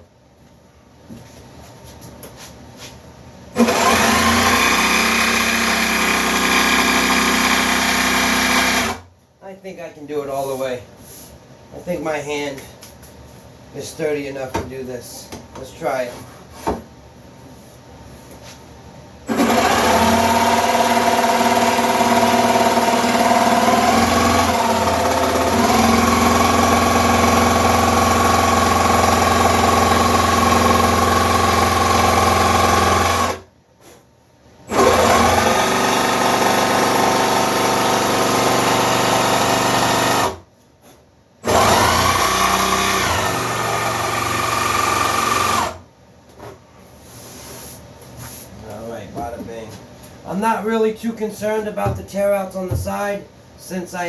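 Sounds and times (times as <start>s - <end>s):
jigsaw cutting wood: 3.6s - 9.0s, 19.3s - 33.4s, 34.7s - 40.4s, 41.4s - 45.8s.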